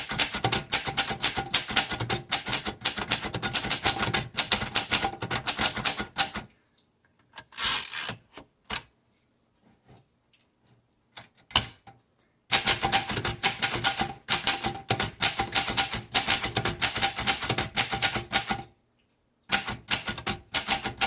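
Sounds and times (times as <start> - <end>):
typewriter keystrokes clacking: 0.0 - 6.5, 12.5 - 18.7, 19.5 - 21.0.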